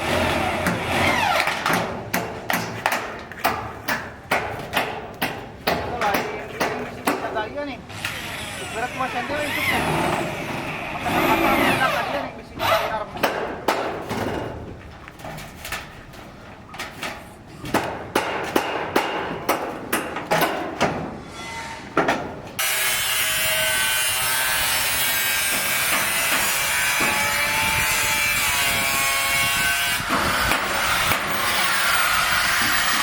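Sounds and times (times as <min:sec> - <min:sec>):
handsaw cutting wood: 0:22.6 - 0:33.0.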